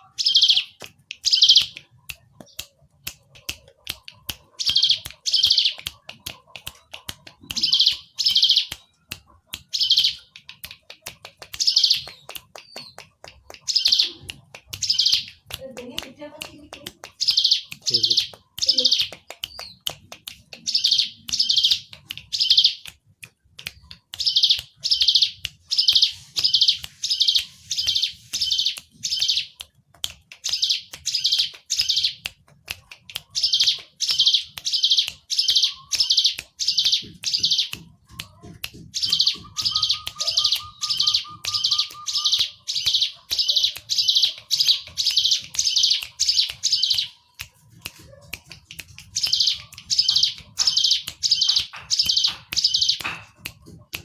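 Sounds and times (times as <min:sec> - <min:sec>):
bird chirping high notes: 0:39.0 - 0:47.2.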